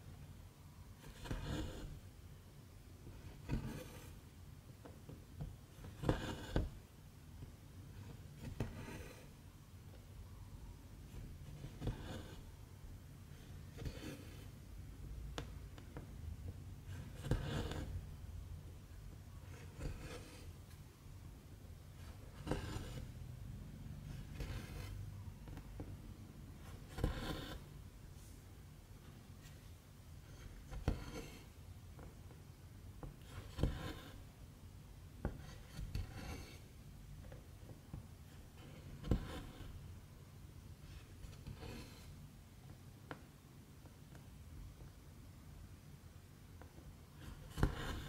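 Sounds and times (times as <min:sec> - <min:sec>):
faint low hum: 0:00.0 - 0:48.0
thread rasping through fabric: 0:16.9 - 0:18.1, 0:22.0 - 0:23.2, 0:26.6 - 0:27.6, 0:47.2 - 0:48.0.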